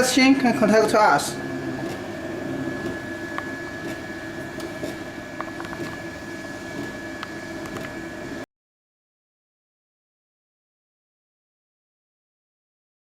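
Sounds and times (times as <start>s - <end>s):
high whine: 0.0s - 8.5s
machine motor and fan humming: 0.0s - 8.5s.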